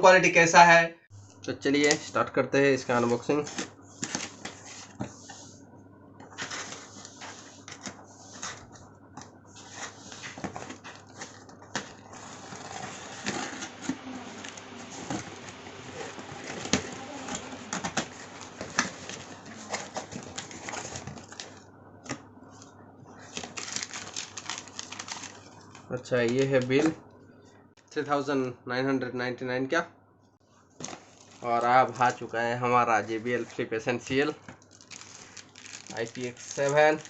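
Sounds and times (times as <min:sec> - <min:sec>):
packaging rustling and scraping: 0:03.0 - 0:05.5, 0:06.3 - 0:21.6, 0:22.2 - 0:27.0, 0:30.8 - 0:32.3, 0:34.4 - 0:37.0.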